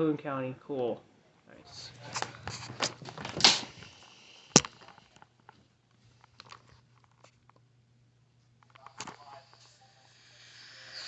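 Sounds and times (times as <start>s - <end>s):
low steady hum: 0.0s - 10.8s.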